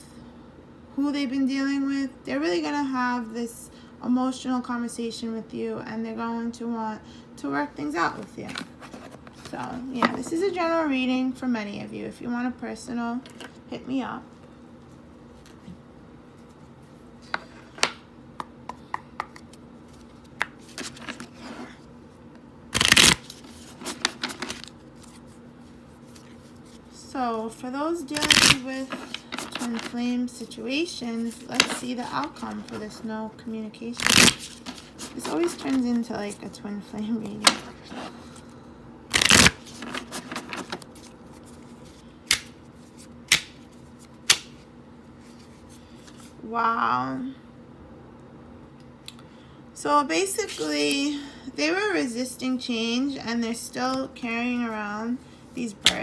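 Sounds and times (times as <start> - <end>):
cards shuffling: 8.1 - 10.4, 19.3 - 21.8, 22.8 - 33.1, 34.0 - 38.5, 39.1 - 44.6, 50.4 - 50.8
cards clicking and tapping: 17.3 - 19.6, 42.3 - 42.6, 43.3 - 43.6, 44.2 - 44.6
sharp card snaps: 42.3 - 42.6, 43.3 - 43.6, 44.2 - 44.6.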